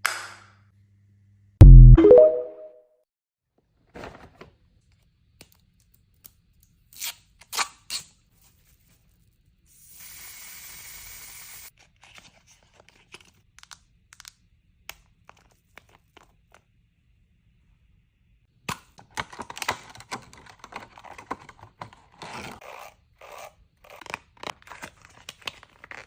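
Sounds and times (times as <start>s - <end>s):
packaging tearing: 23.2s - 26.0s
packaging rustling: 23.9s - 26.0s.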